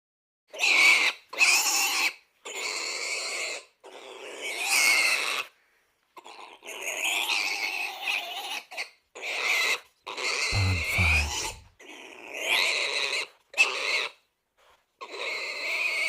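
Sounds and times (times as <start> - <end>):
pig grunting and squealing: 0.6 - 5.5, 6.2 - 14.2, 15.0 - 16.0.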